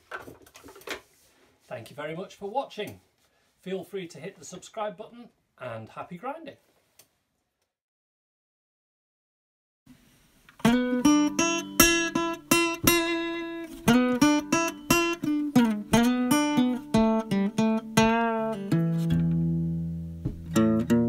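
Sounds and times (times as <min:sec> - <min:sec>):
acoustic guitar plucked and strummed: 0:10.6 - 0:21.0.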